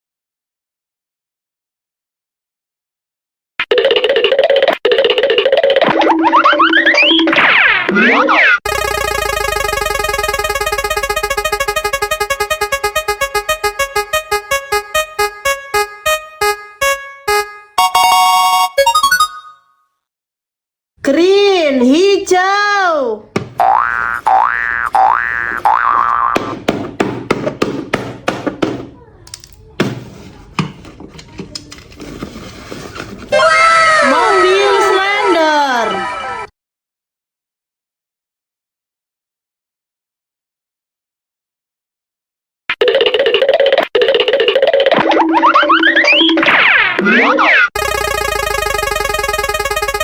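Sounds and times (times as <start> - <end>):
electronic blips slowing: 3.7 - 16.6, 44.1 - 50.0
prize wheel clicking: 8.7 - 19.4, 47.8 - 50.0.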